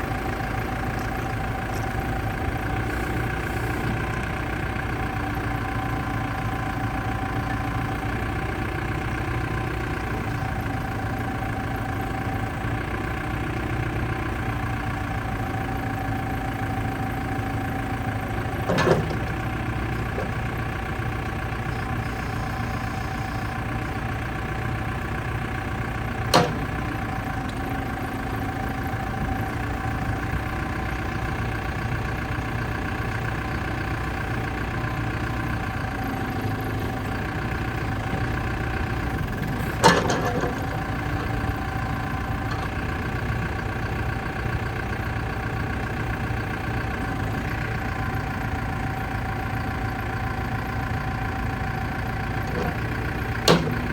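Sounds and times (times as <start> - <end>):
diesel engine idling: 0.0 - 53.9.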